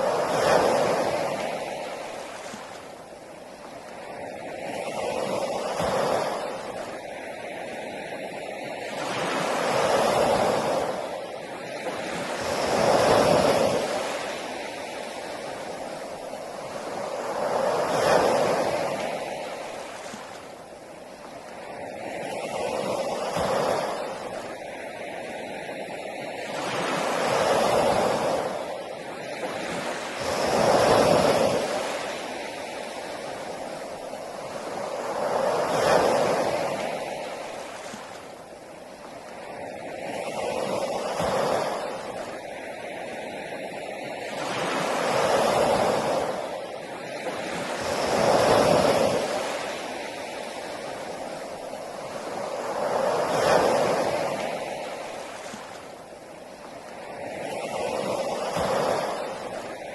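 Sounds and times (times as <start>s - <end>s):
sea waves washing onto beach: 0.0s - 59.9s.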